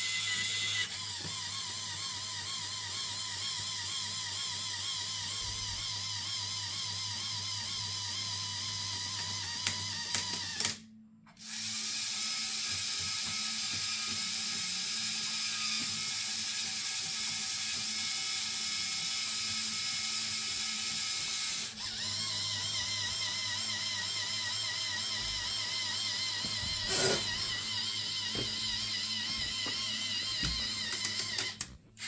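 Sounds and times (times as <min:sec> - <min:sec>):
electric motor whining: 0:19.1 - 0:31.8
plastic gears rattling: 0:26.7 - 0:28.4.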